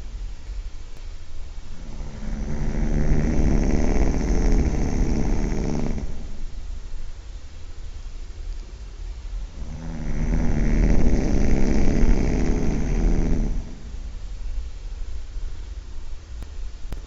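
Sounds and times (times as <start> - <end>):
quiet breathing: 0.0 - 16.2
person snoring loudly: 1.7 - 6.6, 9.5 - 14.2.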